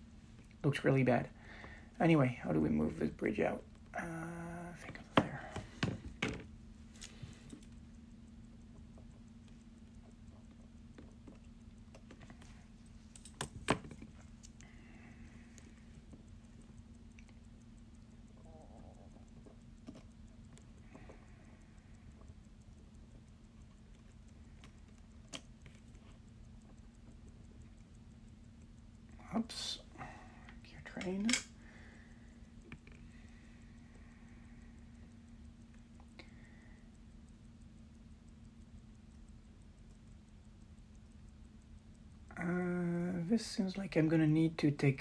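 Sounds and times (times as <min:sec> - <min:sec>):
steady low hum: 0:00.0 - 0:45.0
small metal clicks and taps: 0:04.8 - 0:29.2, 0:30.4 - 0:31.8, 0:32.4 - 0:33.7.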